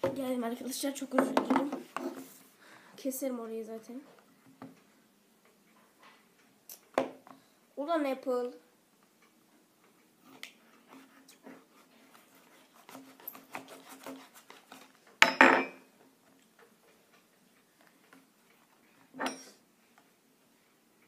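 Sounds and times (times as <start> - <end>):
knife scraping cardboard: 10.9 - 15.0
short tearing rasp: 12.2 - 14.9.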